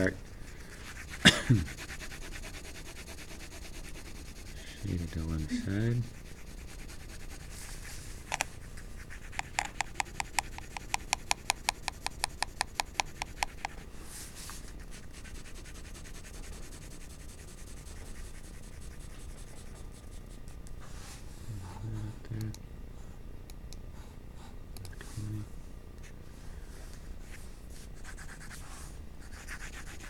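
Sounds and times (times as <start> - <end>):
pencil shading on paper: 0.0 - 7.9, 9.0 - 13.7, 14.9 - 20.0, 28.0 - 30.0.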